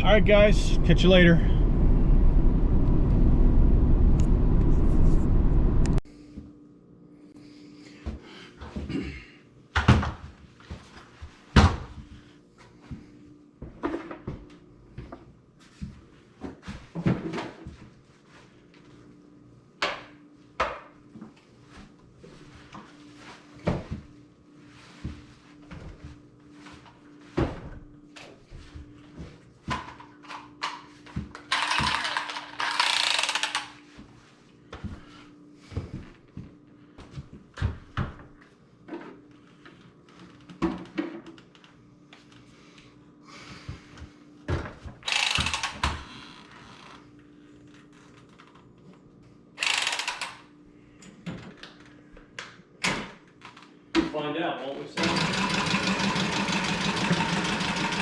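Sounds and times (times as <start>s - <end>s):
faint steady hum: 0.0s - 9.5s.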